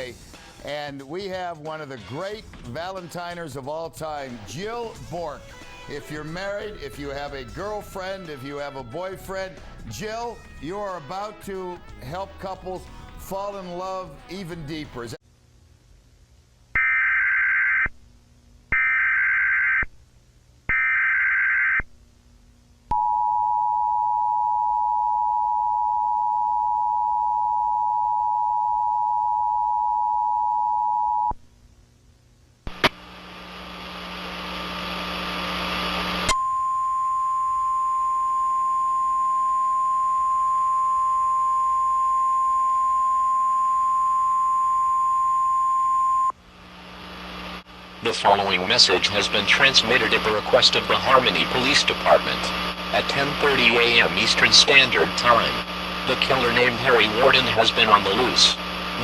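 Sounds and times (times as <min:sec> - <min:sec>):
static: 0:32.6 - 0:36.3, 0:46.4 - 0:59.0
steady tone: 0:47.2 - 0:59.0
warbling data header bursts: 0:48.1 - 0:59.0.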